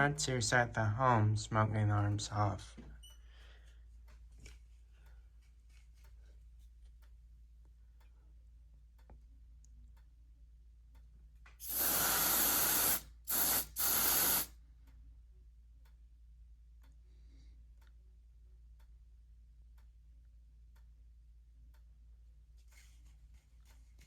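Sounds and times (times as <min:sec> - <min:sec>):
aerosol can spraying: 0:11.6 - 0:14.6.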